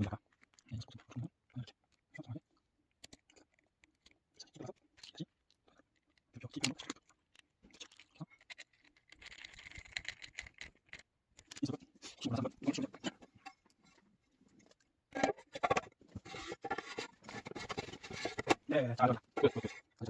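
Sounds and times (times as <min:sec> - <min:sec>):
scratchy rasp: 0:16.2 - 0:20.0.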